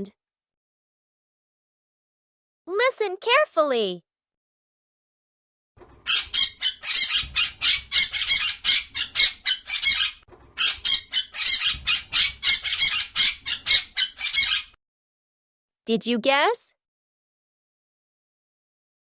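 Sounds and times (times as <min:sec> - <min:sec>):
parrot squawking: 0:06.0 - 0:14.8.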